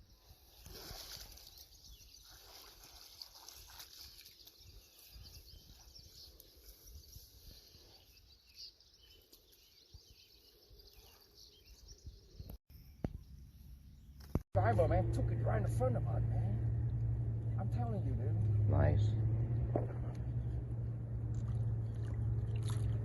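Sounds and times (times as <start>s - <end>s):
low outdoor rumble: 13.4s - 23.0s.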